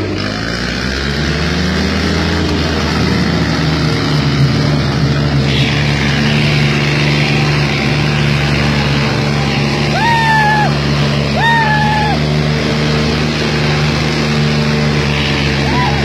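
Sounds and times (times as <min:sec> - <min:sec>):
tractor diesel engine revving: 0:00.0 - 0:16.0.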